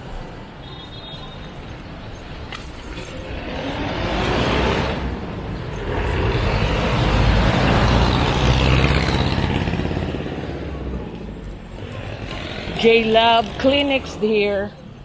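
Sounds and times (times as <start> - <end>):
vehicle passing by: 2.6 - 15.0.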